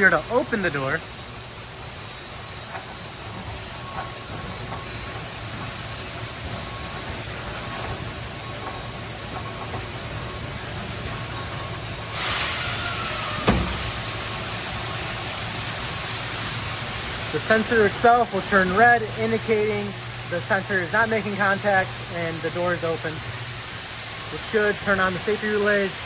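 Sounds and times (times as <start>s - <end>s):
loud hiss: 0.0s - 8.3s, 11.7s - 26.0s
steady machine hum: 0.0s - 26.0s
machine guard door opening: 12.7s - 14.1s
sharp clunk: 13.4s - 13.9s.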